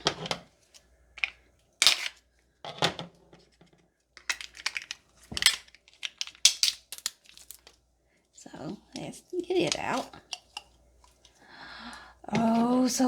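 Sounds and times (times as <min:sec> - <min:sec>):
plastic tub crackling and snapping: 0:04.2 - 0:07.8, 0:09.0 - 0:10.7.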